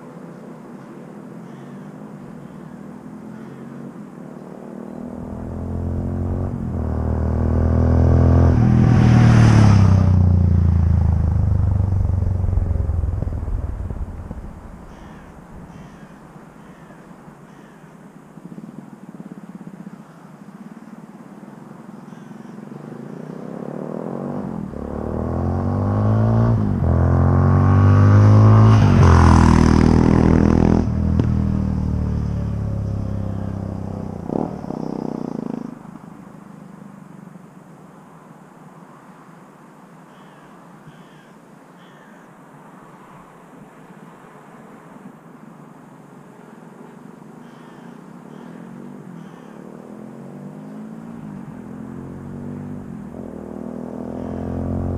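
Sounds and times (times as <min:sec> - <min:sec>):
motorcycle engine passing by: 0:04.3 - 0:16.2, 0:23.0 - 0:36.1, 0:48.5 - 0:54.9.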